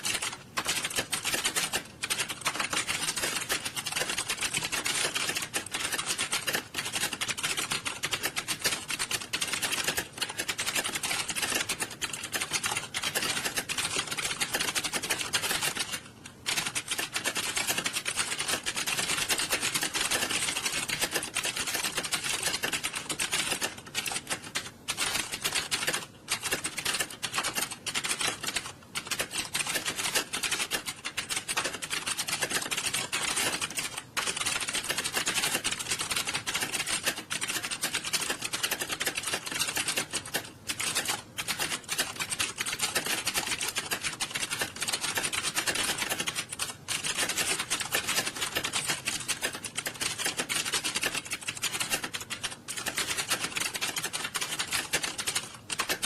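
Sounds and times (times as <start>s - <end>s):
keyboard typing clatter: 0.0s - 56.0s.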